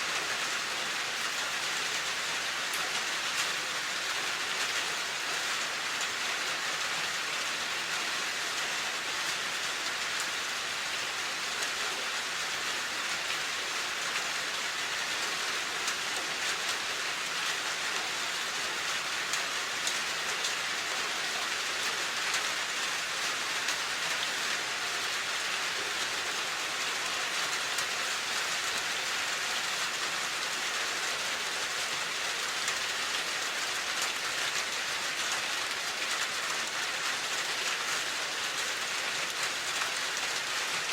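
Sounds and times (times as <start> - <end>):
steady rain pattering: 0.0 - 40.9.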